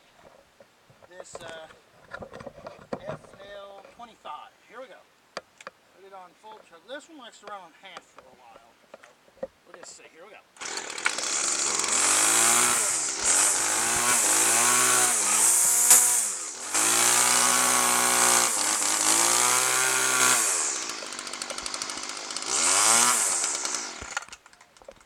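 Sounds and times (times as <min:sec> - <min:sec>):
string trimmer engine revving: 0:10.6 - 0:24.4.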